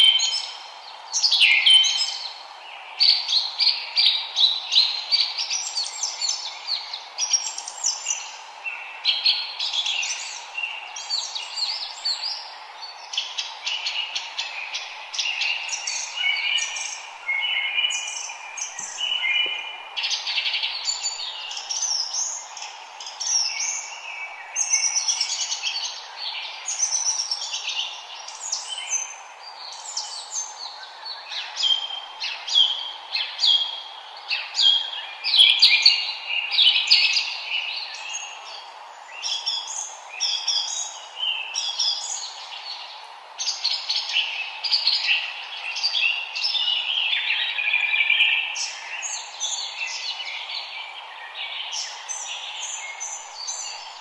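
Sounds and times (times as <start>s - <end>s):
songbirds chorus: 0.0s - 54.0s
steady background hiss: 0.0s - 54.0s.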